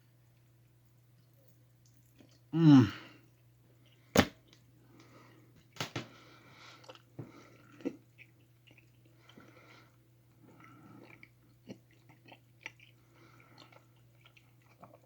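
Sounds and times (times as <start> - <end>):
mouth chewing gummy candy: 6.6 - 15.0.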